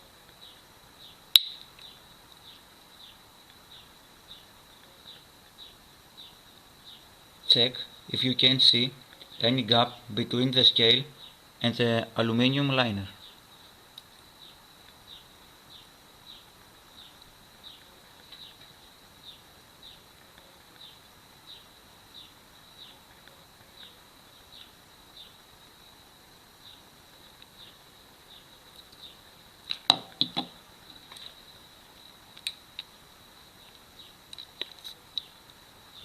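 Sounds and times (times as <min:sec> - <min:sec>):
loud clicks and knocks: 0:29.8 - 0:30.6.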